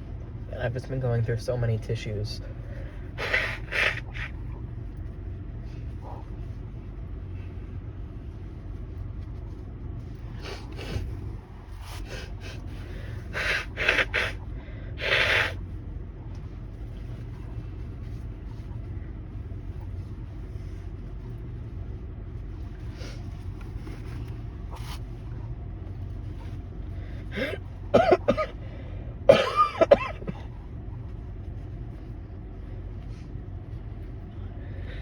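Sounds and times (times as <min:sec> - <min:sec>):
low hum: 0:00.0 - 0:35.0
catching breaths: 0:02.4 - 0:04.6, 0:10.3 - 0:15.8, 0:26.5 - 0:27.9, 0:28.5 - 0:29.2, 0:34.2 - 0:35.0
person sniffling: 0:02.7 - 0:04.4, 0:10.4 - 0:15.6, 0:27.0 - 0:28.7.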